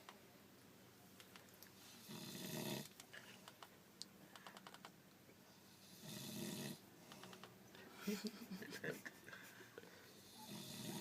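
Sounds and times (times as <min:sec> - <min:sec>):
man snoring: 0:02.0 - 0:02.9, 0:05.8 - 0:06.8, 0:10.2 - 0:11.0.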